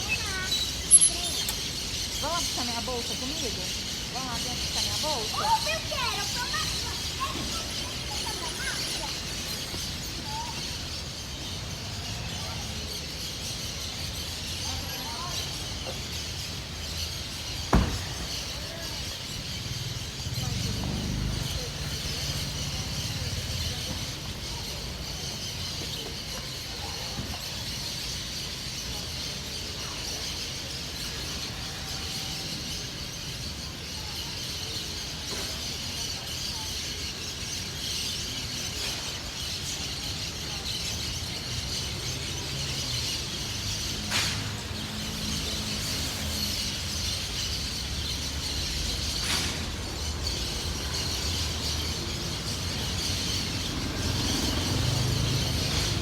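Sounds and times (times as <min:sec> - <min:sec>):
many birds chirping: 0:00.0 - 0:56.0.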